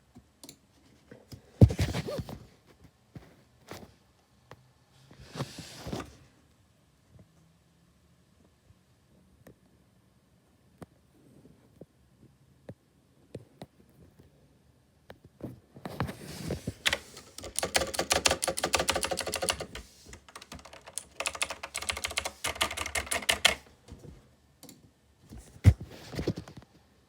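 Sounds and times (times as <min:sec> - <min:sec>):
rapid dense clicking: 0:16.9 - 0:23.6.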